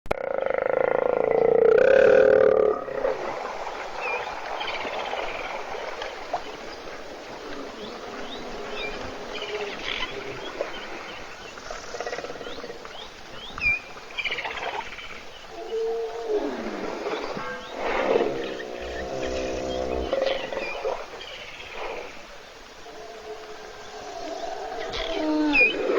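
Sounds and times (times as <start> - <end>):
steady hiss: 2.2 - 25.9
loud pitched animal call: 24.8 - 25.9.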